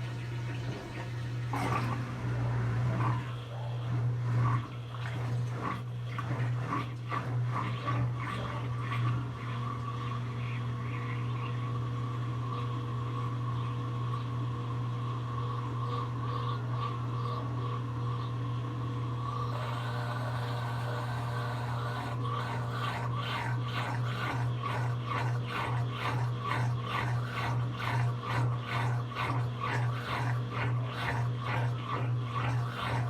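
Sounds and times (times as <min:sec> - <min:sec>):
water sloshing: 0:00.0 - 0:10.3
motor whine: 0:00.0 - 0:33.0
washing machine humming: 0:00.0 - 0:33.0.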